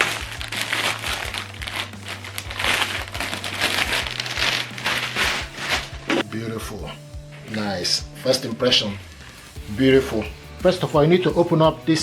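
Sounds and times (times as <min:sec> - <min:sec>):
packaging crinkling: 0:00.0 - 0:06.2.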